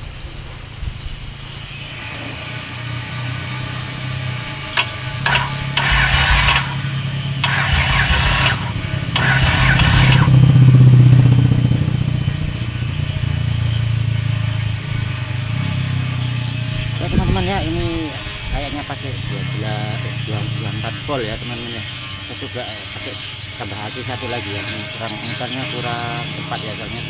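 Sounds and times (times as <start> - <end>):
steady low hum: 0.3 - 27.0
diesel engine starter cranking: 2.1 - 15.7.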